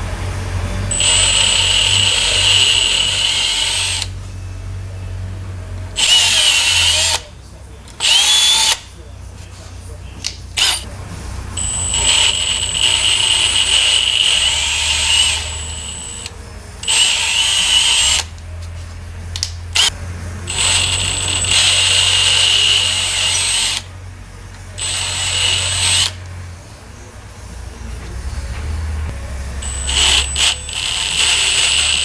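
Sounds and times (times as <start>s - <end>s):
electric drill whining: 0.0s - 4.2s, 6.0s - 7.3s, 8.0s - 8.9s, 10.6s - 10.9s, 11.5s - 18.4s, 19.4s - 23.9s, 24.7s - 26.4s, 29.1s - 32.0s.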